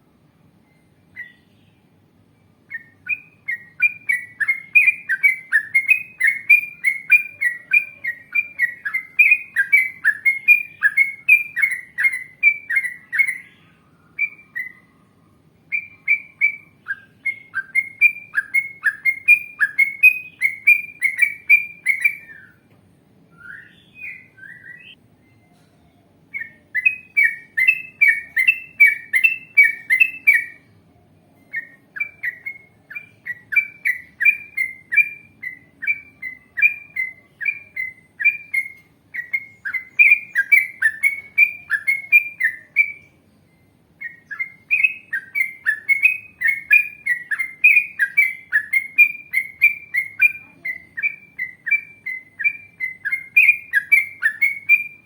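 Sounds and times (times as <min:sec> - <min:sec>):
bird chattering song: 0:00.5 - 0:55.0.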